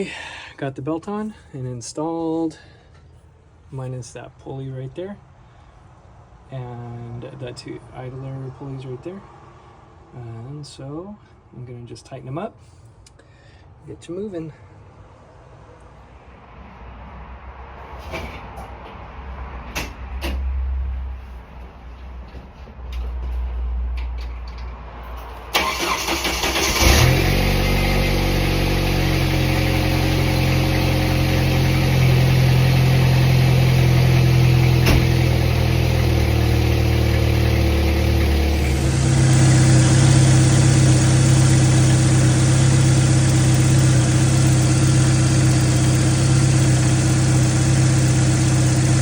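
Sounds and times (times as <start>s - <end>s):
car engine starting and idling: 25.5s - 49.0s.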